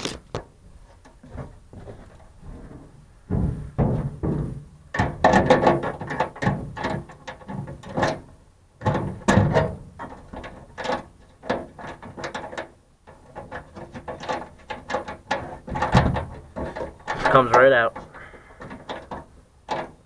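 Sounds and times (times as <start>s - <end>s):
metallic clicks and scrapes: 0.0s - 1.3s.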